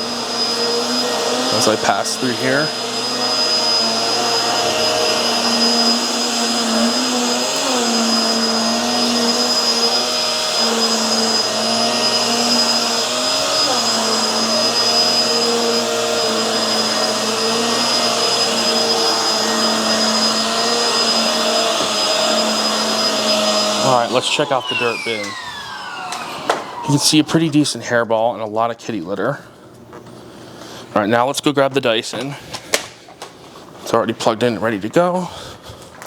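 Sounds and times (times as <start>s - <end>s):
vacuum cleaner running on carpet: 0.0s - 27.8s.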